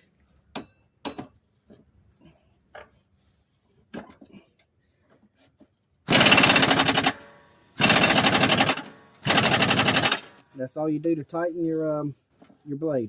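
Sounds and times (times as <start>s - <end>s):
air ratchet rattling: 6.1s - 10.4s.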